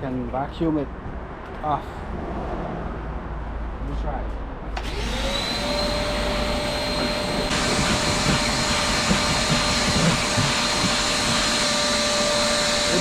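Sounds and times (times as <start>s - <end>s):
vacuum cleaner whine: 4.8s - 13.0s.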